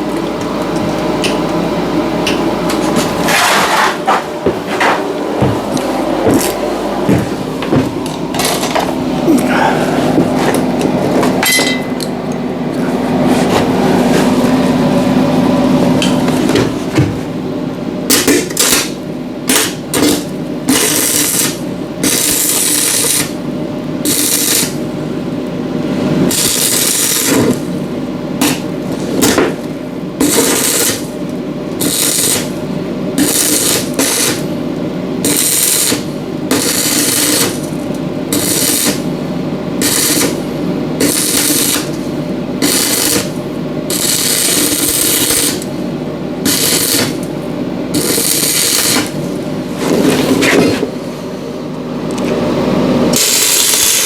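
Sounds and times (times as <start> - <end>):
steady hum: 0.0 - 54.0
welding arc crackling and hissing: 6.2 - 10.6, 18.1 - 23.4, 24.0 - 24.9, 26.2 - 27.8, 28.4 - 45.8, 46.4 - 50.5, 53.1 - 54.0.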